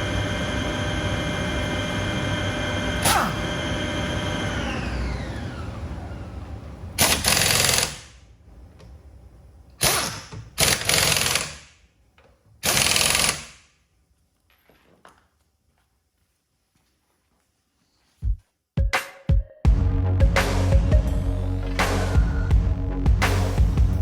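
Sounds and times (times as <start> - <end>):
steam cleaner motor winding down: 0.0 - 8.0, 20.1 - 24.0.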